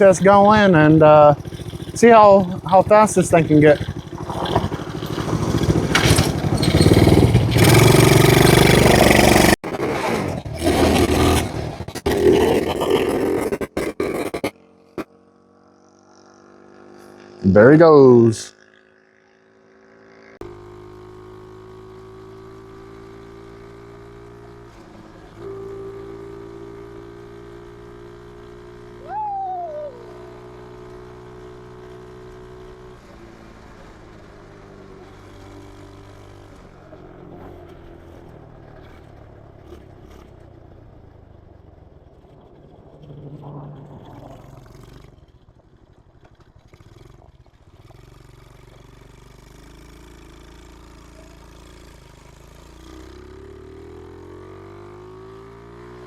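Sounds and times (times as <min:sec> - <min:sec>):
small engine at high speed: 0:00.0 - 0:17.7, 0:18.5 - 0:56.0
loud squeal: 0:06.0 - 0:07.3, 0:29.0 - 0:30.2.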